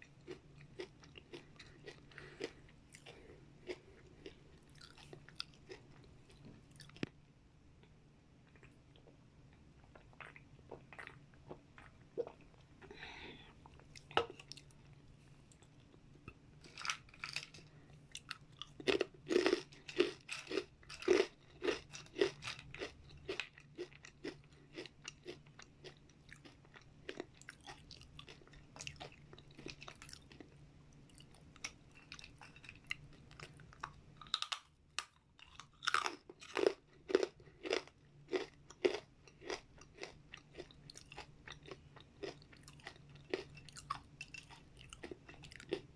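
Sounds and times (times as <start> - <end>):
faint low hum: 0.0 - 45.9
crunching vegetable chips: 16.6 - 30.5, 31.1 - 45.9.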